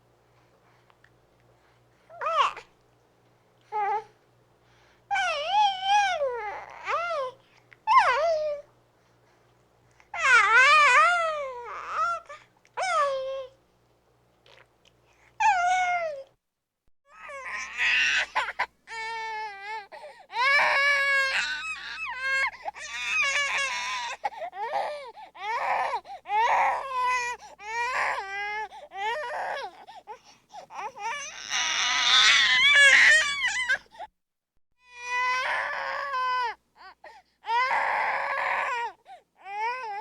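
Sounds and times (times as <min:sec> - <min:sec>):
baby crying: 0:17.1 - 0:29.8, 0:30.7 - 0:33.9, 0:34.9 - 0:40.0.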